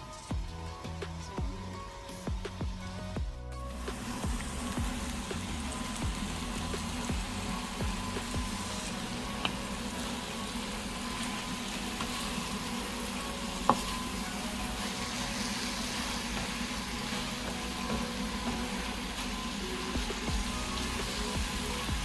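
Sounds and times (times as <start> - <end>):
vegetables sizzling in a pan: 0.0 - 22.0.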